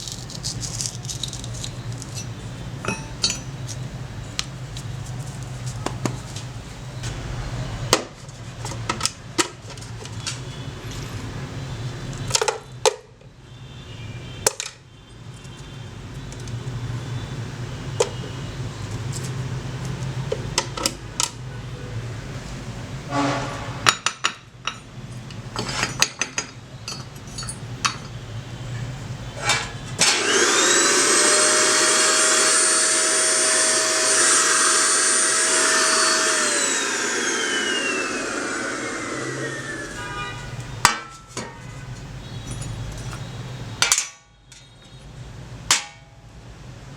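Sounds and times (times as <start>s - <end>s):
metal being handled: 0.0s - 6.5s
power tool motor whining: 29.4s - 40.7s.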